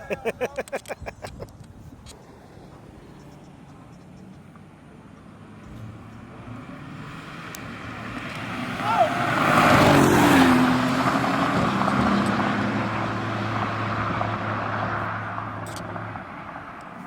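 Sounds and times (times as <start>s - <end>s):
car speeding past: 5.2s - 16.8s.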